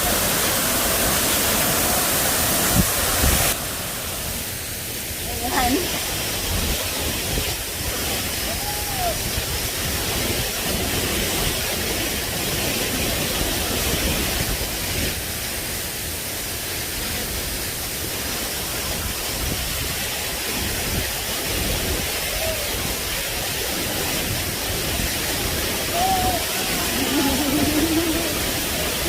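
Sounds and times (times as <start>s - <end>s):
waterfall roaring: 0.0s - 29.0s.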